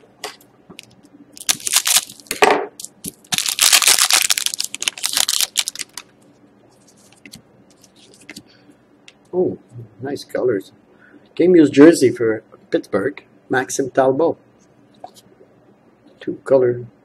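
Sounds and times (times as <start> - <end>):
wrapper tearing and crinkling: 1.4 - 6.1.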